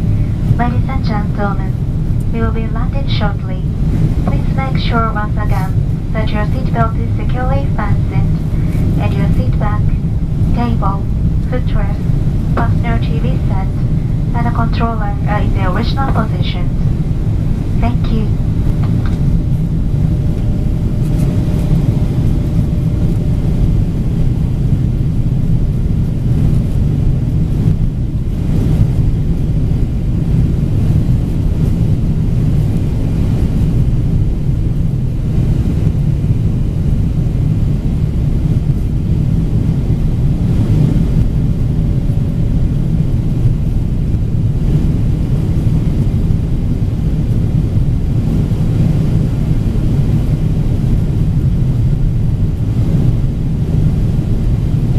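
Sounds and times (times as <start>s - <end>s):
rushing air: 0.0s - 3.0s, 3.7s - 37.8s
jet engines rumbling: 0.0s - 54.9s.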